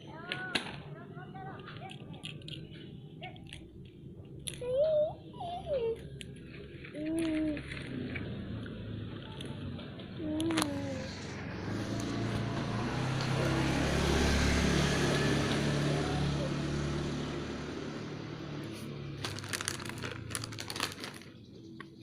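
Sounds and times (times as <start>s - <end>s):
vehicle engine hum: 0.0s - 22.0s
sharp crackling clicks: 1.6s - 2.8s.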